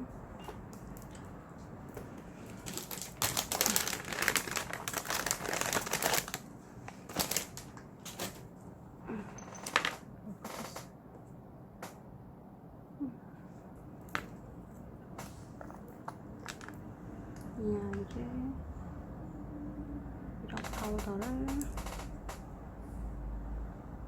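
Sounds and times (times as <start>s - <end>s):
small hard items clattering: 1.9s - 8.5s, 9.2s - 10.0s, 15.6s - 16.8s.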